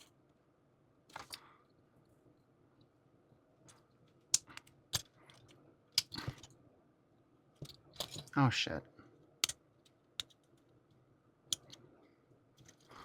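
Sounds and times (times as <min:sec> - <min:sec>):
plastic parts clicking and snapping: 0:01.1 - 0:01.4, 0:03.7 - 0:06.5, 0:09.4 - 0:10.6, 0:11.5 - 0:11.8.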